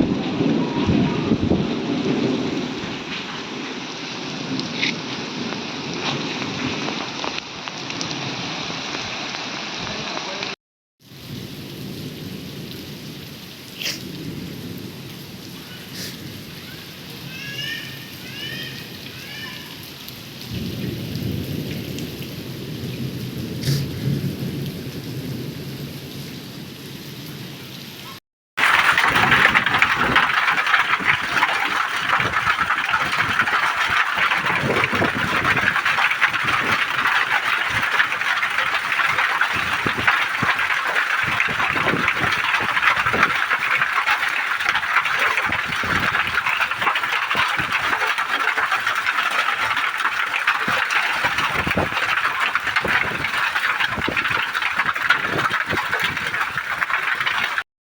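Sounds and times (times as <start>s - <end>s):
thunder rumbling: 0.0s - 7.2s, 28.6s - 57.6s
heavy rain pouring: 0.0s - 57.6s.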